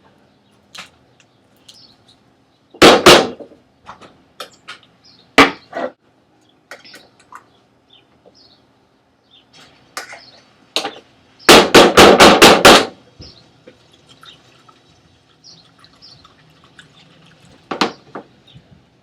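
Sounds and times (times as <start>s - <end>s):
loud knocks: 2.8s - 3.5s, 11.5s - 13.0s.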